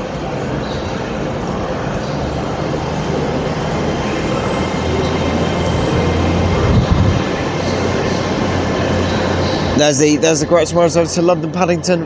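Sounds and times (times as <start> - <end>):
train engines droning: 0.0 - 12.0
wind buffeting microphone: 3.8 - 9.9.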